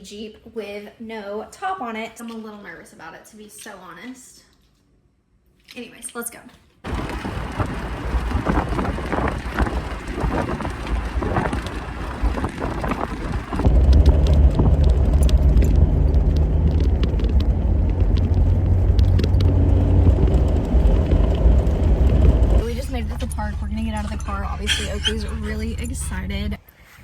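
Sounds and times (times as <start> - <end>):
wind and road noise: 6.8 - 26.6
deep vehicle rumble: 6.9 - 26.6.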